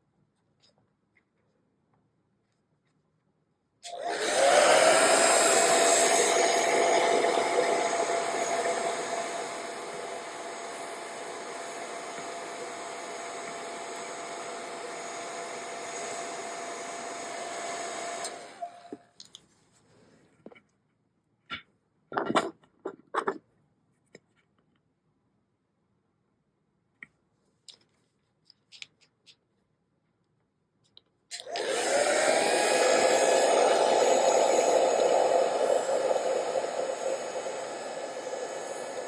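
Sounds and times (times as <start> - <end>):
hot-air blower whining: 3.8 - 19.0, 31.4 - 39.0.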